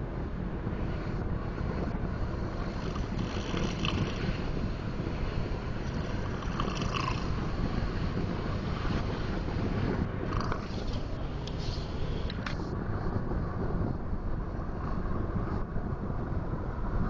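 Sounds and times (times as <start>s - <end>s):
person snoring: 2.8s - 4.2s, 5.9s - 7.4s.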